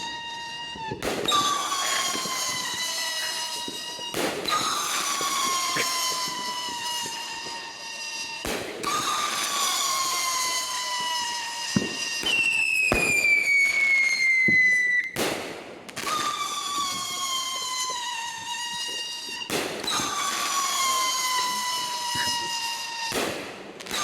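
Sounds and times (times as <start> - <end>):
firework bangs: 0.0 - 24.0
whistling fireworks screeching: 0.0 - 24.0.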